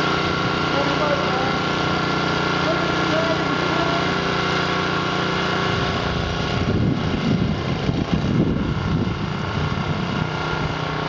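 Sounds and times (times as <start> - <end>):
small engine running: 0.0 - 11.0.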